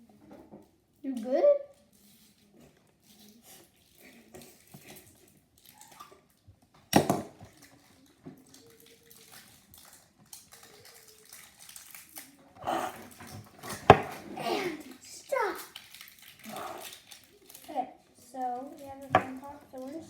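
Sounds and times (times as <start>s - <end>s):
packaging ripping: 7.5s - 20.0s
packaging rustling: 7.5s - 20.0s.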